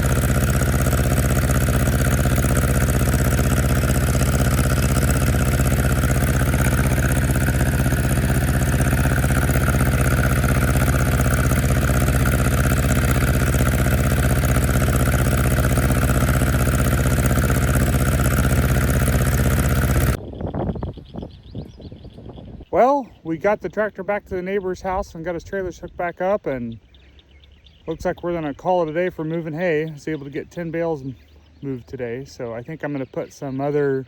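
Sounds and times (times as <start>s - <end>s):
tractor engine running: 0.0s - 20.2s.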